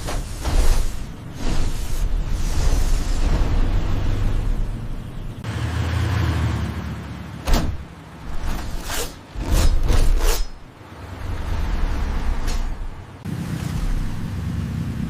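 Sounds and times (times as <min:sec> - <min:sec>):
low rumble: 0:01.1 - 0:05.5.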